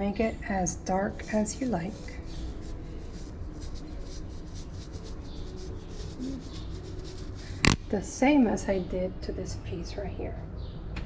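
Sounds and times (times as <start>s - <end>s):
paintbrush rubbing on wood: 0.8s - 7.7s.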